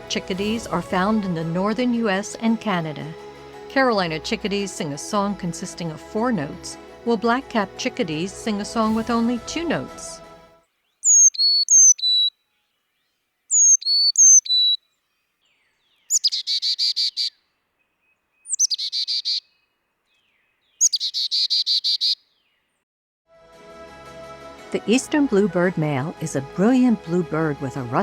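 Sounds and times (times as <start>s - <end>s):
chickadee buzzy call: 11.0s - 12.3s, 13.5s - 14.8s, 20.8s - 22.2s
chickadee whistled song: 11.0s - 12.3s, 13.5s - 14.8s.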